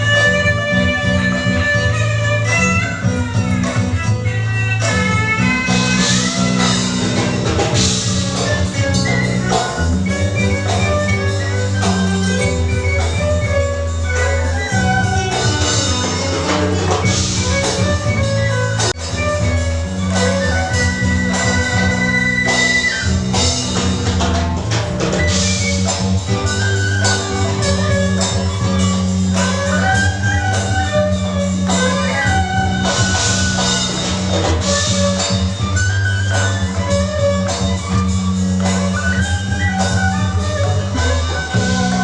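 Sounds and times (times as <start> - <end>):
instrumental music with drums: 0.0 - 42.0.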